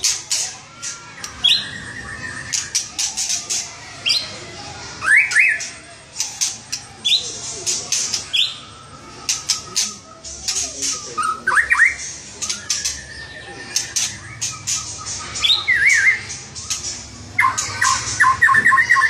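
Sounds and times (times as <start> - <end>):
bird singing varied song: 0.0 - 19.0.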